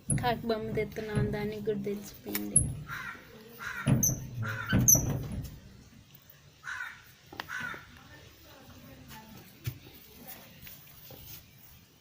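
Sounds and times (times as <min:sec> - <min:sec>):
crow cawing: 0:02.8 - 0:04.9, 0:06.6 - 0:07.9.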